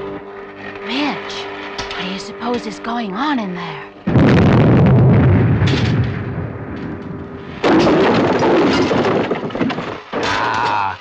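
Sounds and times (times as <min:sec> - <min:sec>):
loud crashing and clattering: 0:04.1 - 0:07.0, 0:07.6 - 0:10.6.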